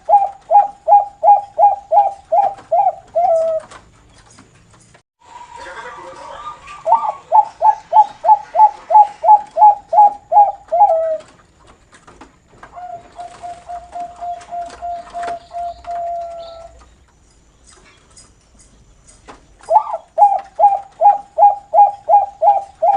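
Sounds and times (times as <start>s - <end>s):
dove cooing: 0.0s - 3.8s, 6.3s - 11.4s, 12.7s - 16.9s, 19.7s - 22.9s.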